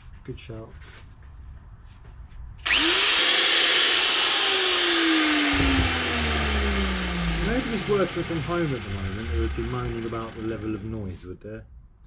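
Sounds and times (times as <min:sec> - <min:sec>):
electric grinder grinding steel: 0:02.7 - 0:11.0.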